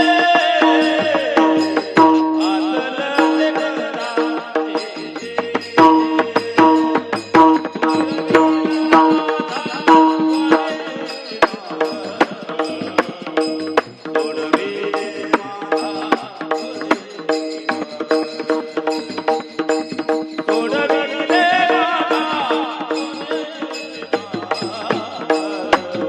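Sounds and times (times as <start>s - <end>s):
regular drum strokes: 0.0s - 26.0s
melody of held notes: 0.6s - 3.5s.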